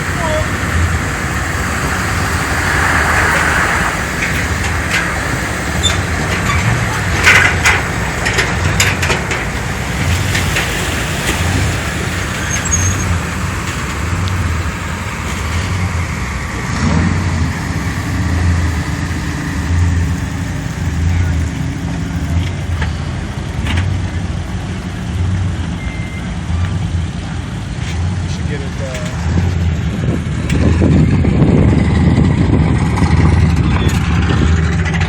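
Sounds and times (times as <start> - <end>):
engine low pulsing rumble: 0.0 - 35.0
sharp clanks: 3.2 - 14.5.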